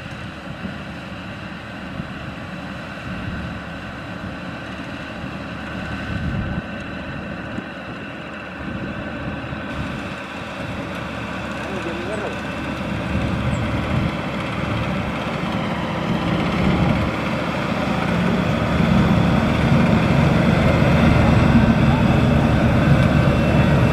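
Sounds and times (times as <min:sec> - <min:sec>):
combine harvester engine hum: 0:00.0 - 0:23.9
machinery whining tones: 0:09.8 - 0:23.9.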